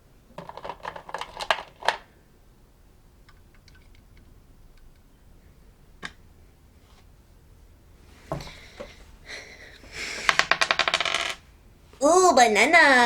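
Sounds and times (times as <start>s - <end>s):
plastic game pieces clicking: 0.4s - 2.0s, 3.3s - 4.9s, 10.2s - 11.4s.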